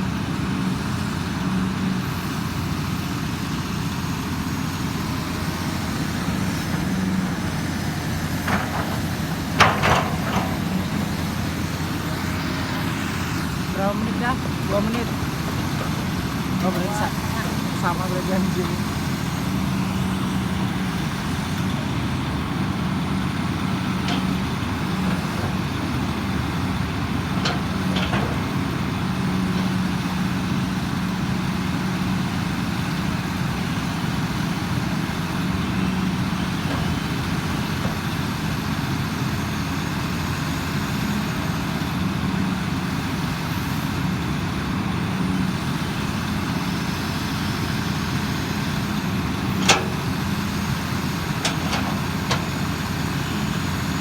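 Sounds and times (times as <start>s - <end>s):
diesel engine running: 0.0s - 54.0s
metallic clanks: 6.3s - 18.9s, 24.0s - 25.8s, 27.3s - 29.8s, 49.5s - 52.9s.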